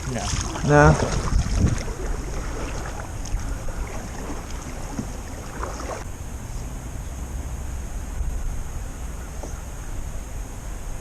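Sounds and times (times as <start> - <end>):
boat motor running: 0.0 - 6.1
wind on microphone: 0.0 - 11.0.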